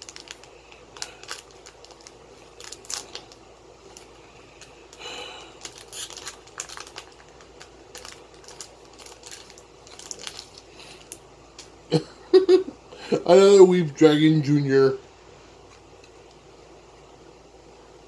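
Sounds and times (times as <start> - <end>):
foil pack crinkling and tearing: 0.0 - 11.2.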